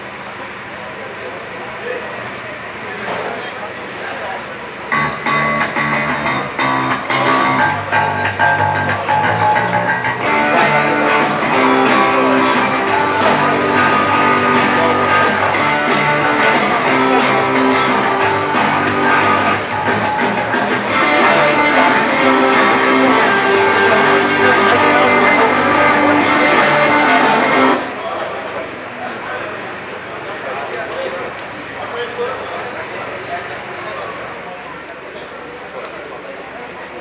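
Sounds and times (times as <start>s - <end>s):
strummed rock guitar music: 4.9s - 27.8s.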